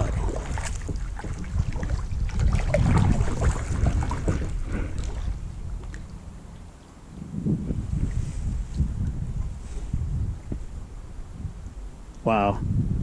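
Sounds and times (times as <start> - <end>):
kayak paddle dipping in water: 0.0 - 6.7
wind rumbling on microphone: 0.0 - 13.0.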